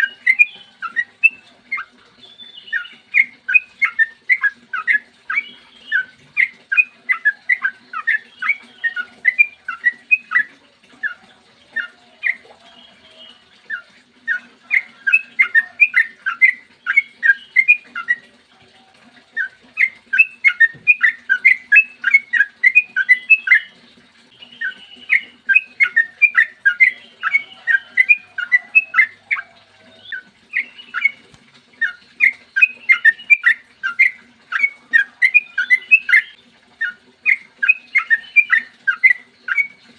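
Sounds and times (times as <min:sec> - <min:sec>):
bird singing whistled notes: 0:00.0 - 0:11.2, 0:11.8 - 0:18.2, 0:19.4 - 0:23.7, 0:24.3 - 0:31.2, 0:31.8 - 0:39.8.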